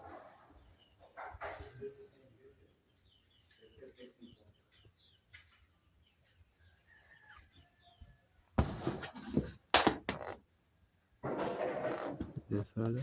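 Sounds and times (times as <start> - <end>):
faint bird chirps: 0.0 - 8.6.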